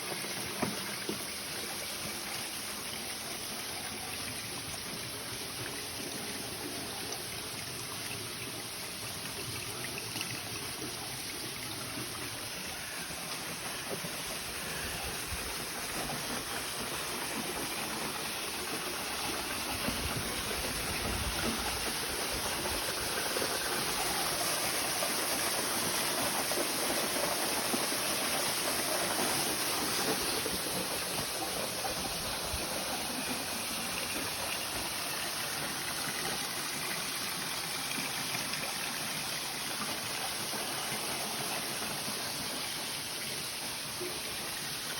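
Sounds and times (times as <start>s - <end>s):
waterfall and stream rushing: 12.2s - 44.9s.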